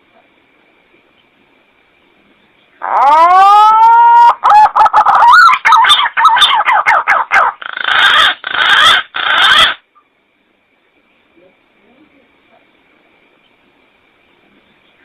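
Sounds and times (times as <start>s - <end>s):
harsh raspy bird notes: 2.8s - 9.8s
pigeon whistling call: 2.9s - 9.8s.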